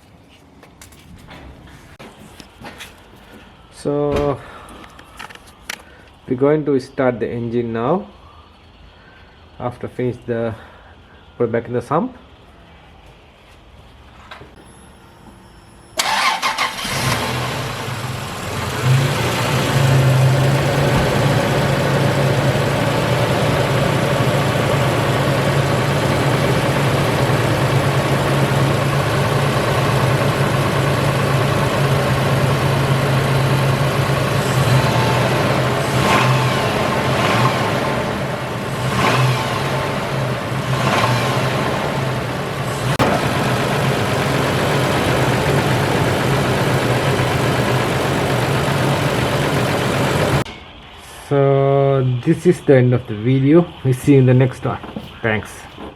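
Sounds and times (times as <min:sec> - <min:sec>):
car engine starting and idling: 0:14.6 - 0:50.5.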